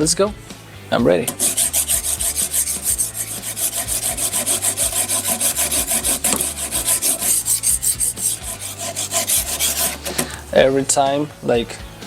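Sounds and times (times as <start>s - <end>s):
sharpening stone rasping on blade: 1.3s - 10.4s.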